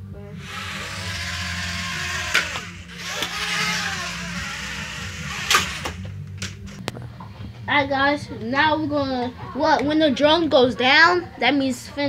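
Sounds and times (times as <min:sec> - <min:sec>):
drone propellers whirring: 0:00.4 - 0:06.2.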